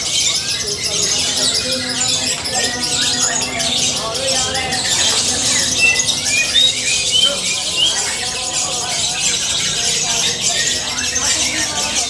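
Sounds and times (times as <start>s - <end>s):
bird chattering trill: 0.0s - 12.0s
voices talking in background: 0.0s - 12.0s.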